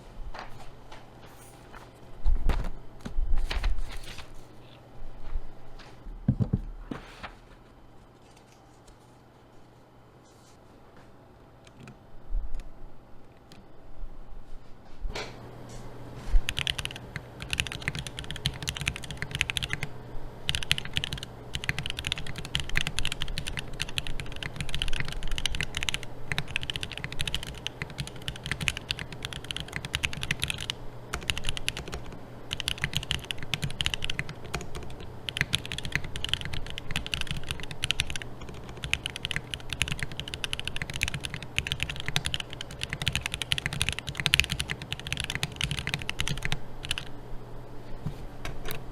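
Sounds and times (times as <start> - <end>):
mechanical keyboard clicks: 16.5 - 19.9, 20.5 - 47.1.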